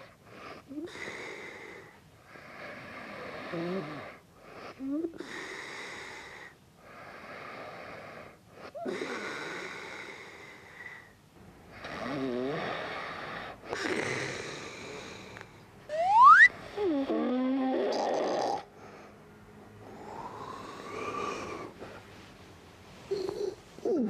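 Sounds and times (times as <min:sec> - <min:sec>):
man snoring: 0:02.7 - 0:04.1
rising whistle-like tone: 0:15.9 - 0:16.5.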